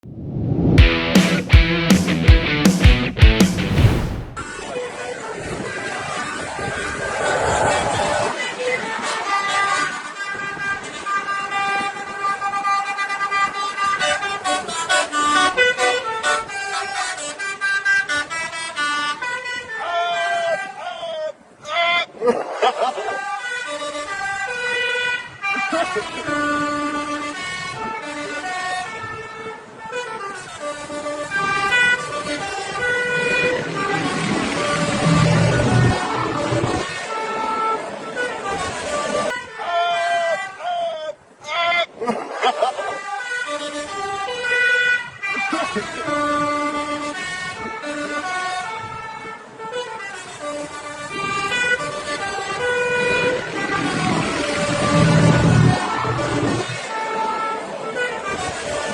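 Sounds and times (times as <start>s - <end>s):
background music: 0.8s - 4.5s, 53.4s - 56.9s
multi-tone musical air horn: 8.2s - 20.8s, 23.3s - 39.5s, 43.1s - 58.9s.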